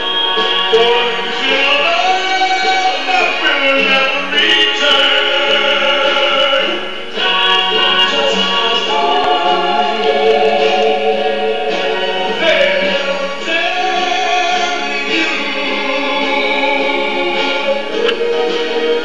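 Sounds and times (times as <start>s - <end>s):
choir singing sustained chords: 5.3s - 14.1s.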